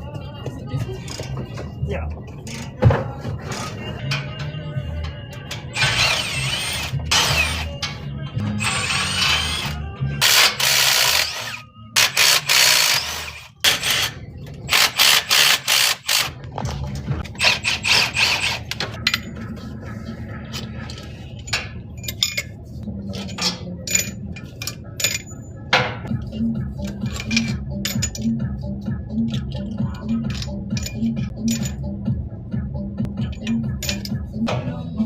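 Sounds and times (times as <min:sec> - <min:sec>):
metallic clinks of tools: 0:29.9 - 0:31.8, 0:33.2 - 0:34.2.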